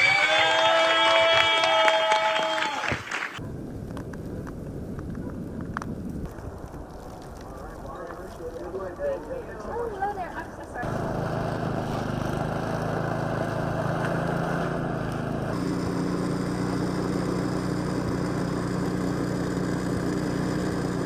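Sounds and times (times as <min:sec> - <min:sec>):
vehicle engine humming: 0:09.8 - 0:21.0.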